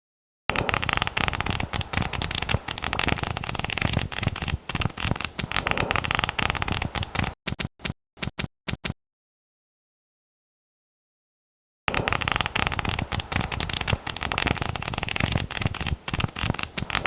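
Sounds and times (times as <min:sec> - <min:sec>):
flipbook pages riffling: 0:00.5 - 0:07.7, 0:11.9 - 0:17.0.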